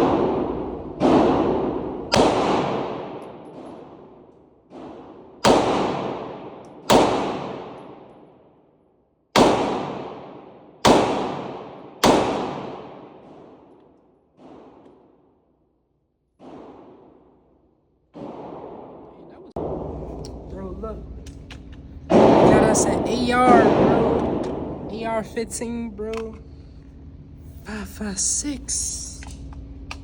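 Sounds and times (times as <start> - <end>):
faint gunshots: 0.0 - 8.1, 9.3 - 13.7, 16.4 - 17.4, 18.1 - 20.1, 22.1 - 24.9
pistol shots echoing: 0.0 - 8.5, 9.3 - 15.2, 16.4 - 17.5, 18.1 - 20.3, 22.1 - 25.0.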